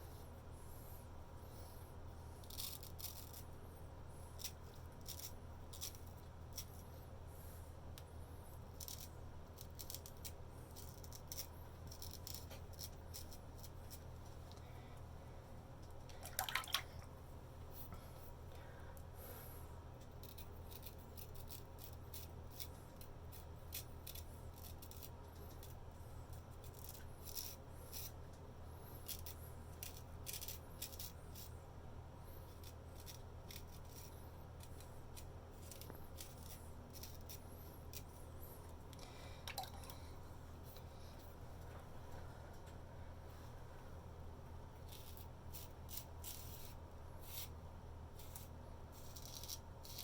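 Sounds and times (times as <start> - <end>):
razor scraping through hair: 2.4 - 3.6, 4.2 - 6.9, 8.5 - 14.1, 20.1 - 28.2, 28.8 - 31.6, 32.4 - 38.6, 44.8 - 47.6, 48.2 - 50.0.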